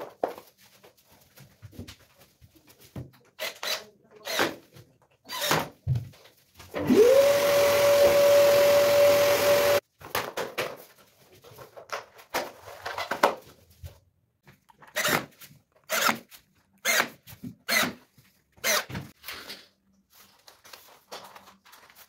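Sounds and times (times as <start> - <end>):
power tool motor running: 6.8 - 9.8.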